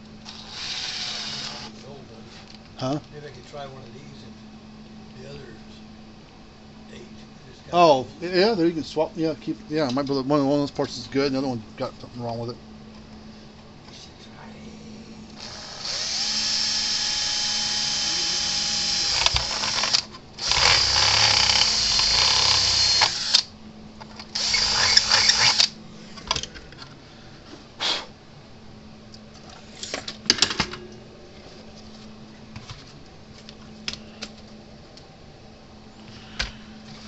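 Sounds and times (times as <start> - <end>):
electric drill drilling: 0.2 - 1.7, 15.4 - 23.5, 24.3 - 25.8.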